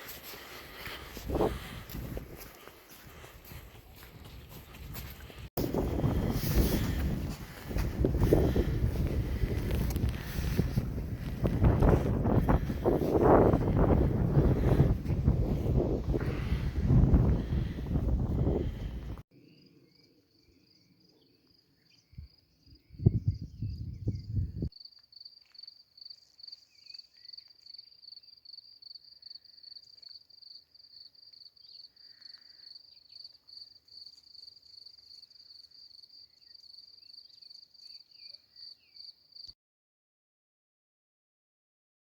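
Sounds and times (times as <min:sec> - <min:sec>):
cricket chirping: 0:19.4 - 0:39.6.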